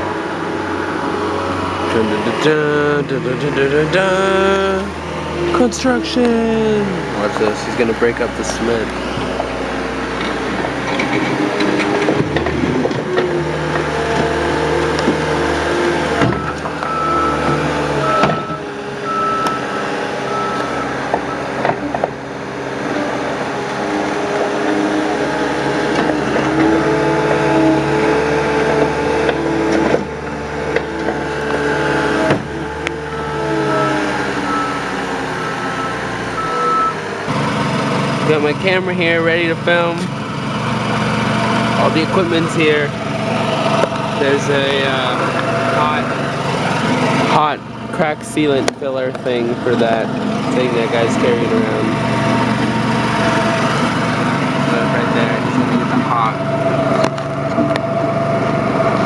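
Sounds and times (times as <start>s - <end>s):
diesel engine of heavy machine: 0.0s - 59.0s
reversing alarm beeping: 14.6s - 22.3s, 31.2s - 37.3s.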